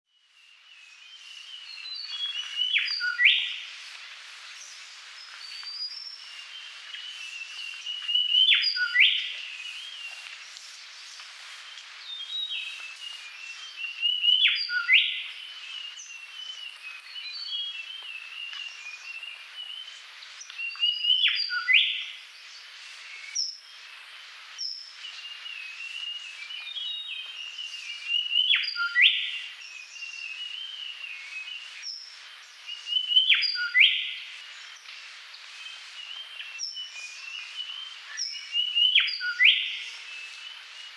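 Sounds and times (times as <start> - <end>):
birds singing and chirping: 24.7 - 40.9.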